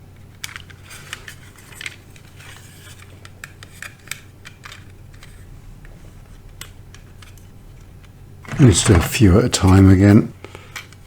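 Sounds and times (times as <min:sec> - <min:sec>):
steady low hum: 0:04.8 - 0:11.0.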